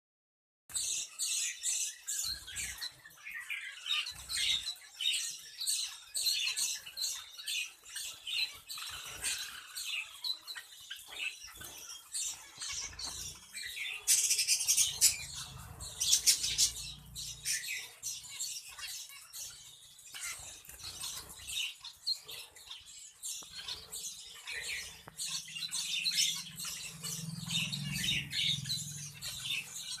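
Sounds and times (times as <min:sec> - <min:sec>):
finches chirping: 0:00.7 - 0:30.0.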